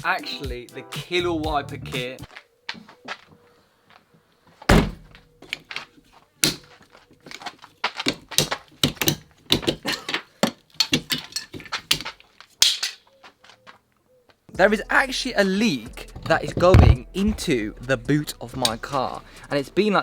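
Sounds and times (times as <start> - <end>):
heavy thunk: 4.7 - 5.2, 16.6 - 17.4
sharp clicks and knocks of tools: 8.0 - 13.0.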